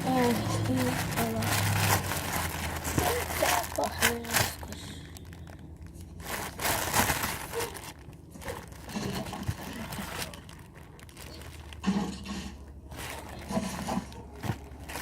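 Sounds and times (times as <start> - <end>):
packaging crinkling: 0.0 - 11.9, 12.8 - 15.0.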